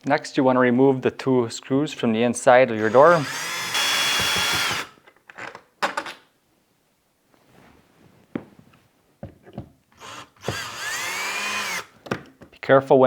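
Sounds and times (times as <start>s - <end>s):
cordless drill running: 2.8s - 5.0s, 10.0s - 12.0s.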